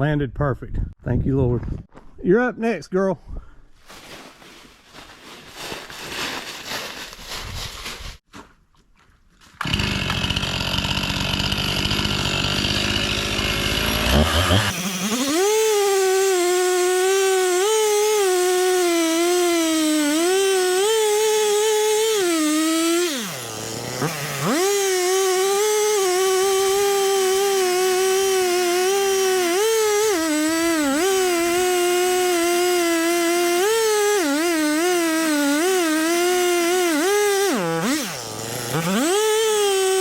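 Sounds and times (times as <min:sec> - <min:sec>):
chainsaw cutting tree trunk: 0:09.6 - 0:40.0.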